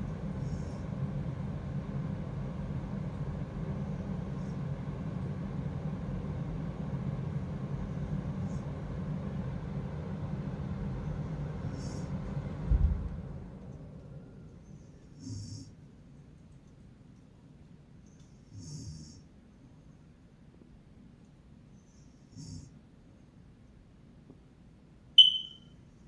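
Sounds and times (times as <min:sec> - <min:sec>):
low rumble: 0:12.6 - 0:13.7
breathy whistles: 0:25.2 - 0:25.8.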